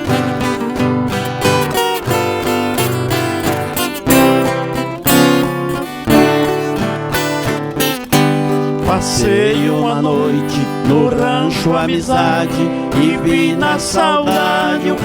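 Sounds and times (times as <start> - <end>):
plucked guitars: 0.0 - 15.0.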